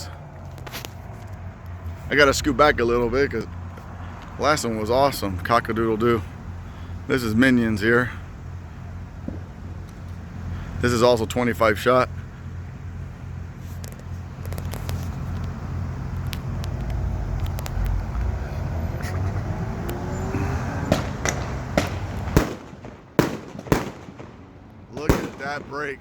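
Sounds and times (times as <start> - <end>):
low rumble with crackling: 12.1 - 20.0
fireworks cake firing shots: 20.9 - 26.0.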